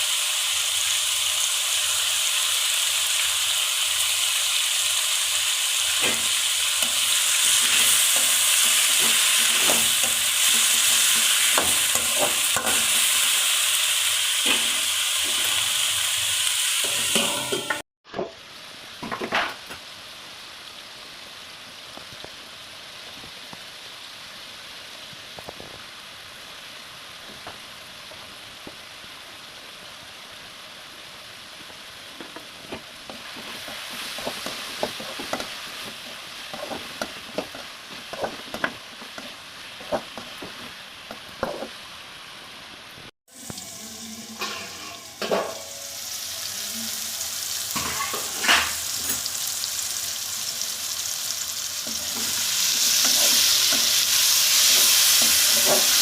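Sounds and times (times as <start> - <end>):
food sizzling in a pan: 0.0 - 56.0
spoon scraping a pan: 6.0 - 13.3, 16.8 - 17.8, 33.1 - 40.8, 44.4 - 45.9, 47.7 - 49.3, 51.8 - 56.0.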